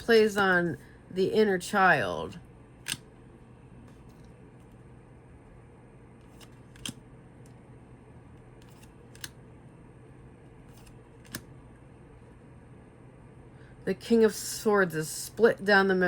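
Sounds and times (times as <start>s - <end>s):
faint steady hum: 0.0s - 16.0s
cards flipped and set down: 6.2s - 7.0s, 8.6s - 9.4s, 10.7s - 11.5s.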